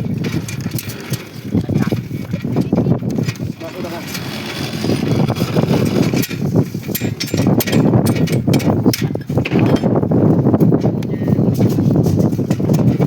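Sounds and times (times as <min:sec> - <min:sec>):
steady rumble: 0:00.0 - 0:13.0
rebar clicking and knocking: 0:05.8 - 0:10.0.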